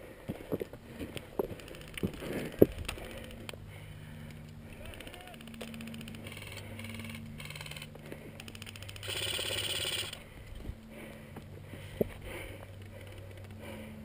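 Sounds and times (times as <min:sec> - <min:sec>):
airsoft guns firing bursts: 0:08.5 - 0:10.2.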